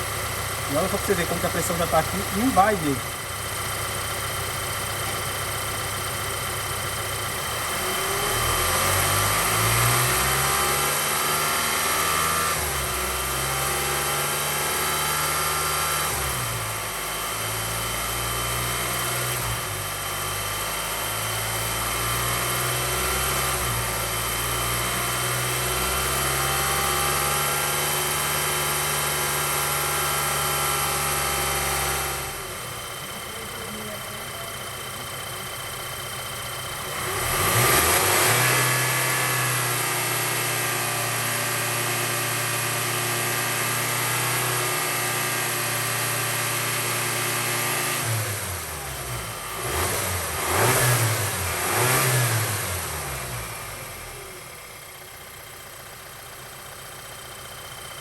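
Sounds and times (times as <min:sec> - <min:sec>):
car engine revving: 0:00.0 - 0:03.6, 0:07.0 - 0:19.7, 0:20.3 - 0:55.4.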